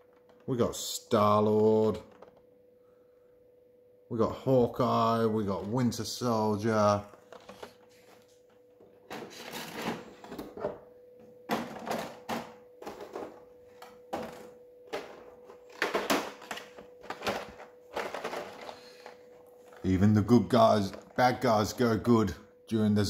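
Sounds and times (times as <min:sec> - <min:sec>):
plastic clicks and rustling: 0:07.1 - 0:10.8, 0:11.5 - 0:19.9.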